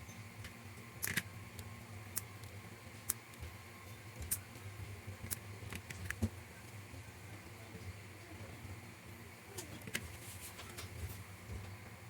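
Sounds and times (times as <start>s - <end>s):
small plastic parts clicking: 1.0s - 1.7s.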